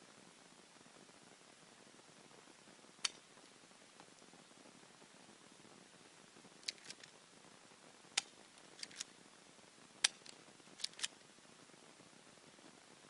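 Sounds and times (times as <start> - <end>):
airsoft pistol shots clicking: 10.0 - 11.1.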